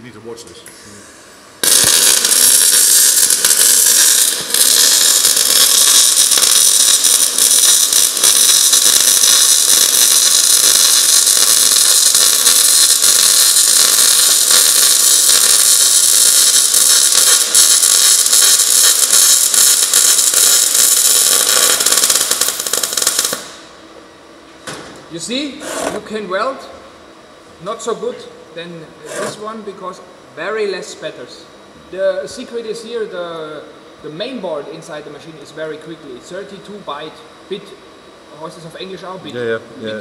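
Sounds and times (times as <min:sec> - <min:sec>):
welding arc hissing crackle: 0:00.9 - 0:24.0, 0:29.0 - 0:29.8.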